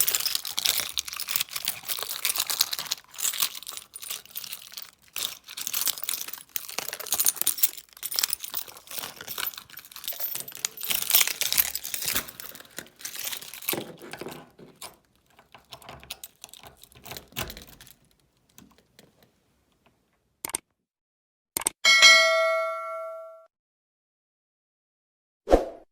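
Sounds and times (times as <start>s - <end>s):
metal keys clicking together: 0.0s - 20.0s.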